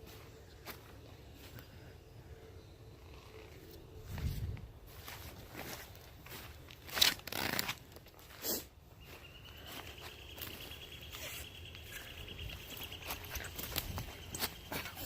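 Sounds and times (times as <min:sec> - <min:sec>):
crunching or rustling noises: 0:03.2 - 0:15.0.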